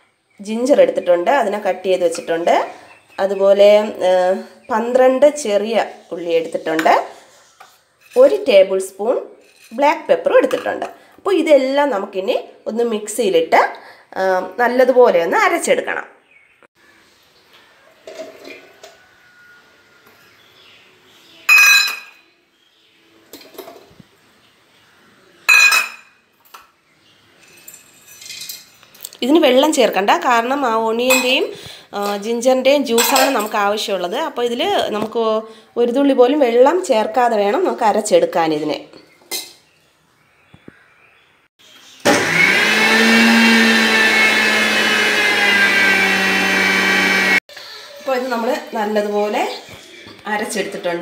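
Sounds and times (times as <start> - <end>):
metal kitchenware clanging: 21.5 - 22.3, 25.5 - 26.2, 27.3 - 29.0, 31.0 - 32.2, 32.9 - 33.8, 39.3 - 39.6
mixer grinder whining: 41.8 - 47.4.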